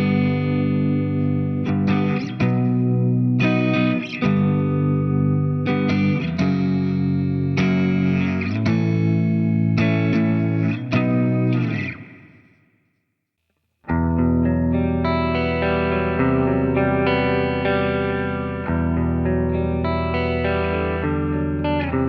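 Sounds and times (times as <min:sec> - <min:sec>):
distorted electric guitar: 0:00.0 - 0:12.6, 0:13.9 - 0:22.0.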